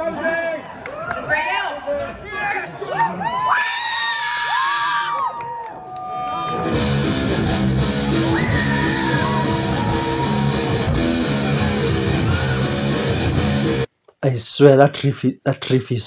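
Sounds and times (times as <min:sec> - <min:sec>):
crowd cheering: 0:00.0 - 0:13.9
rock band with electric guitar riff: 0:06.4 - 0:13.9.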